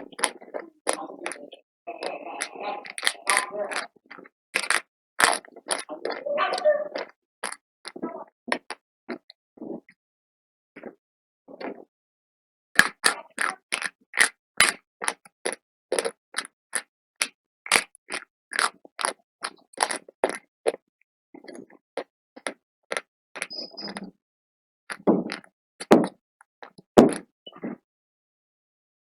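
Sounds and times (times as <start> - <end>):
crunching of brittle slate being chewed: 2.4 - 6.2, 12.8 - 20.8.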